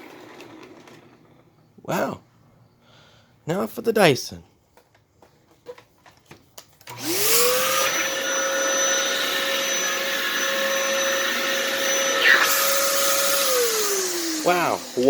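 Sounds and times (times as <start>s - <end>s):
vacuum cleaner motor whining: 0.0s - 1.6s, 6.8s - 15.0s.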